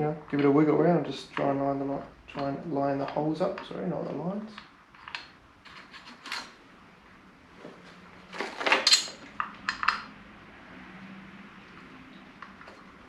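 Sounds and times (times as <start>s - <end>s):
metal parts clicking and clinking: 4.5s - 6.6s, 8.3s - 10.1s
parts clattering: 7.8s - 10.2s.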